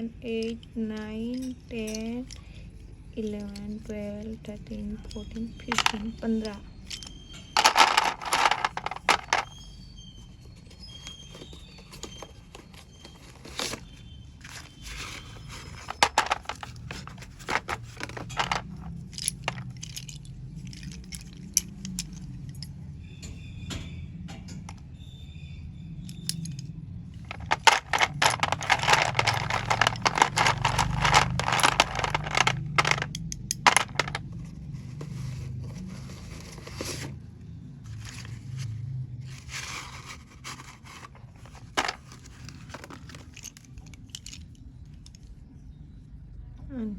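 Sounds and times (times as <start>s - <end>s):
slate pencils clattering: 0.3s - 2.6s, 3.2s - 9.7s, 10.5s - 22.7s, 26.1s - 37.1s, 39.4s - 45.2s
scraping: 5.2s - 9.7s, 10.6s - 20.1s, 27.2s - 37.2s, 39.3s - 43.6s.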